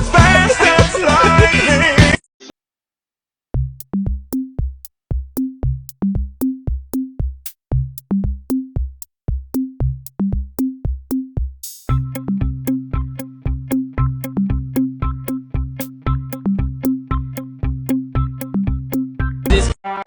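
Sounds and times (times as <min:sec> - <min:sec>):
drum machine beat: 0:03.6 - 0:19.8
synth chords: 0:11.9 - 0:19.7.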